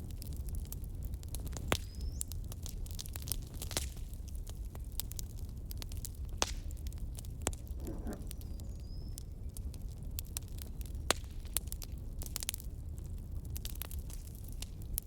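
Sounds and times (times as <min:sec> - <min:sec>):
wood fire crackling: 0:00.0 - 0:15.0.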